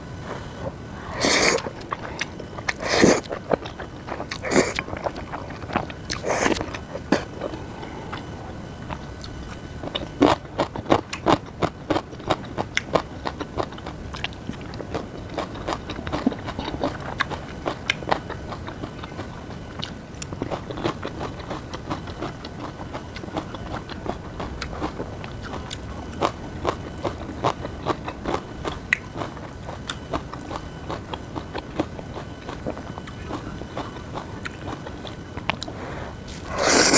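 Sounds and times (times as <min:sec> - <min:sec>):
person chewing crisp food: 0:00.2 - 0:36.9.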